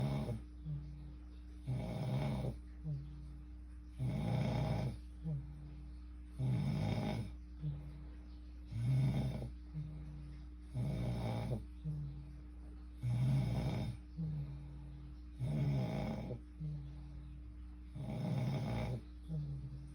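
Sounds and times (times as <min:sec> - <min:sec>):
person snoring: 0:00.0 - 0:00.4, 0:01.6 - 0:02.6, 0:04.0 - 0:05.0, 0:06.4 - 0:07.4, 0:08.7 - 0:09.5, 0:10.7 - 0:11.7, 0:13.0 - 0:14.4, 0:15.4 - 0:16.8, 0:18.0 - 0:19.0.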